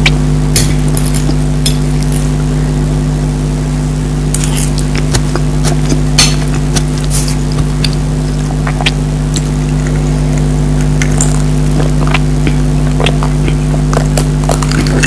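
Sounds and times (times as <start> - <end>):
loud steady low hum: 0.0 - 15.0
chewing: 4.4 - 15.0.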